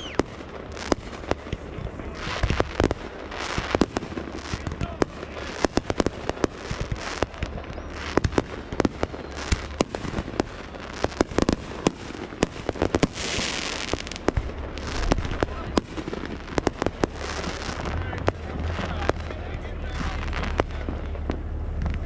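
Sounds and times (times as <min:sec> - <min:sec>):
fireworks bangs and pops: 0:00.0 - 0:22.0.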